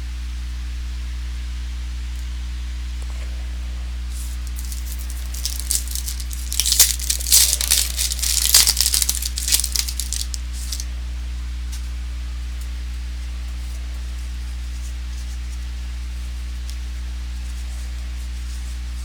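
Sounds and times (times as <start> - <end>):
low electrical hum: 0.0 - 19.0
wrapper crinkling and tearing: 4.4 - 10.8.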